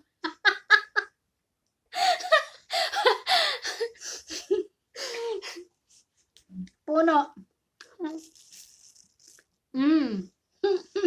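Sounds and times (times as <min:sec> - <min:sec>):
woman laughing: 0:00.2 - 0:01.1, 0:02.0 - 0:05.6.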